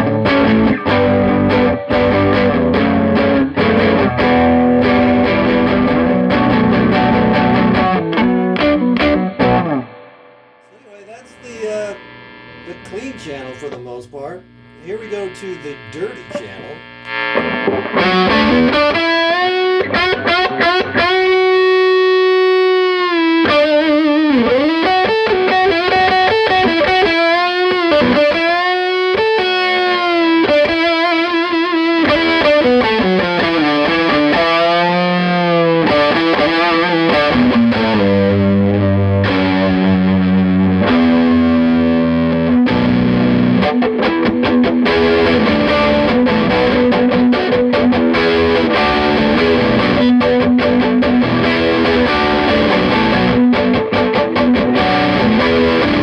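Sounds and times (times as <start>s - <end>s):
distorted electric guitar: 0.0s - 56.0s.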